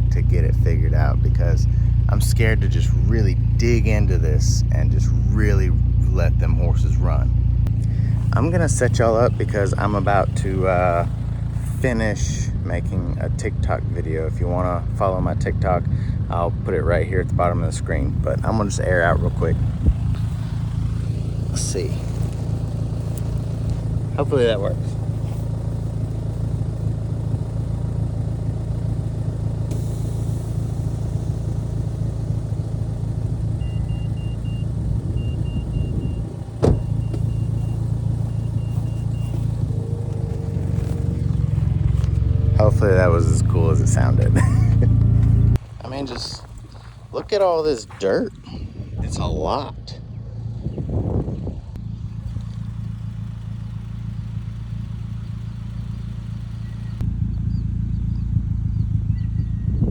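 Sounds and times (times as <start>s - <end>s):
car engine running: 0.0s - 59.9s
sharp bang: 36.6s - 37.4s.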